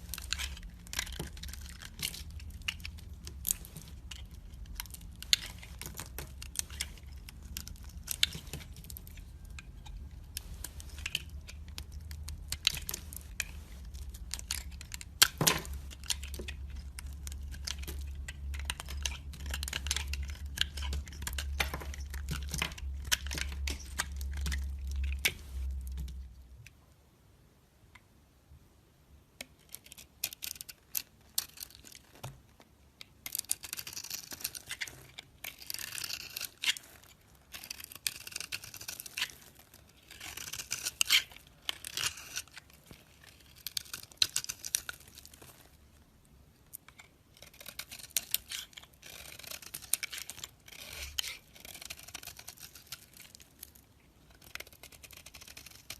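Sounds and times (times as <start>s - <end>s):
low steady hum: 0.0s - 29.3s.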